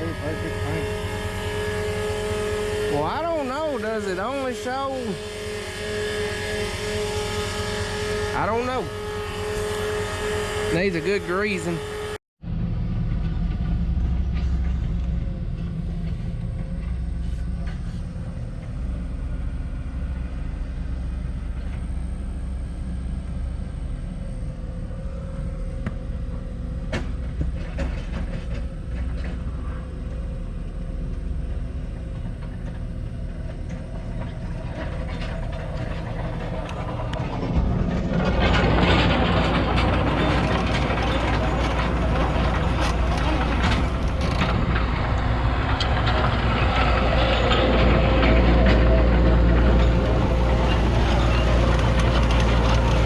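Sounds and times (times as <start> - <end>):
excavator diesel engine running: 0.0 - 53.0.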